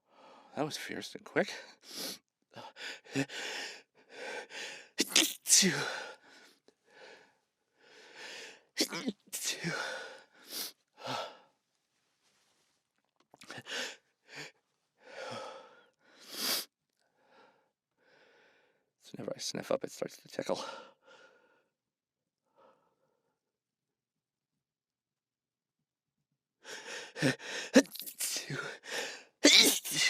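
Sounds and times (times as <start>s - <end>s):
man breathing heavily: 1.8s - 5.0s, 5.7s - 8.7s, 9.5s - 11.5s, 13.5s - 18.8s, 26.6s - 29.4s.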